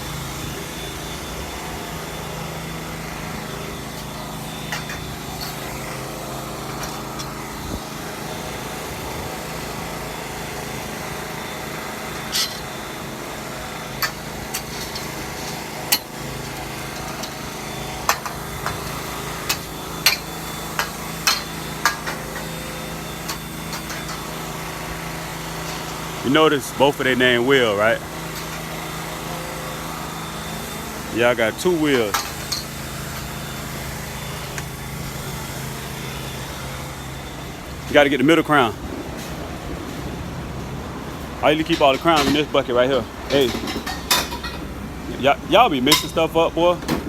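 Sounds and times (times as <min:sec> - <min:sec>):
steady engine hum: 0:00.0 - 0:47.0
metal tent poles clanking: 0:04.7 - 0:05.6, 0:12.2 - 0:12.7, 0:18.0 - 0:22.5, 0:41.4 - 0:44.7, 0:45.7 - 0:47.0.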